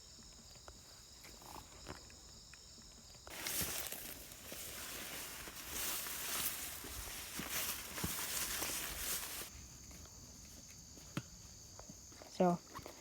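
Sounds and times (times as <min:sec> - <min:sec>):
footsteps rustling on woodland floor: 0:03.2 - 0:13.0.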